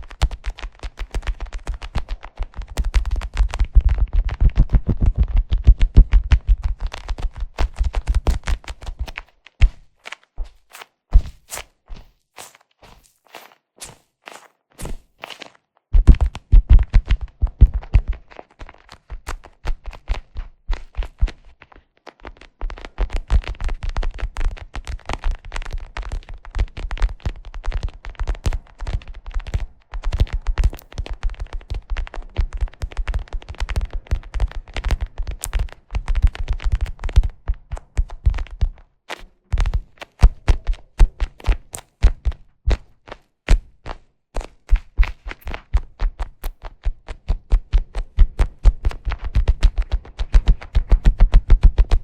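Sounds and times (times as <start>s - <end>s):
tapping and scratching on leather: 0.0s - 52.0s
fingers tapping on leather cushion: 2.8s - 9.9s.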